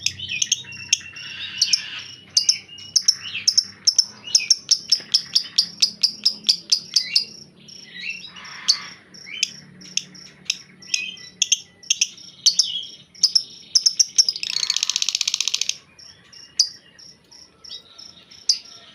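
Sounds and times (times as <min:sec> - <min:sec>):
bird chattering chirps: 0:00.0 - 0:18.9
bird buzzing rattle: 0:13.8 - 0:15.8.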